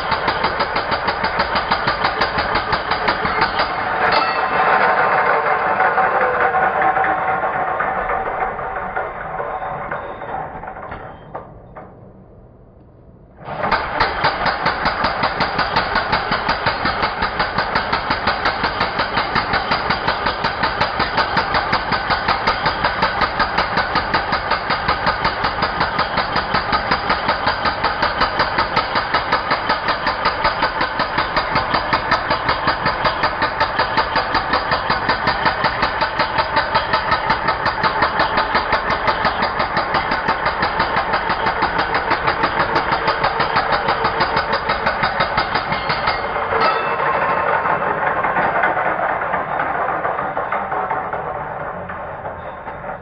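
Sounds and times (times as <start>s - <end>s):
electric demolition hammer hammering: 0.0s - 12.1s, 13.4s - 53.0s.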